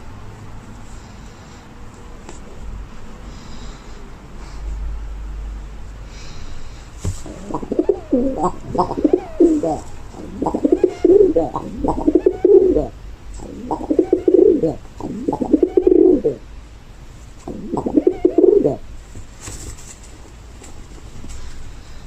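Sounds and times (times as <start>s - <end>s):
pigeon cooing: 7.2s - 16.5s, 17.4s - 18.9s.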